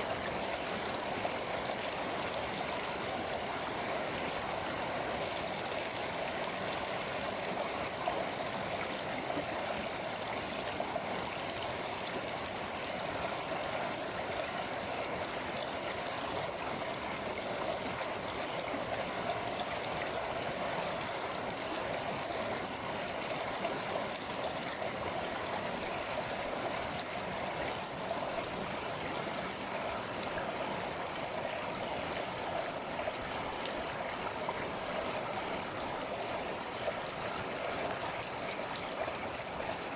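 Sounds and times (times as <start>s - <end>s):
river rushing over rocks: 0.1s - 39.9s.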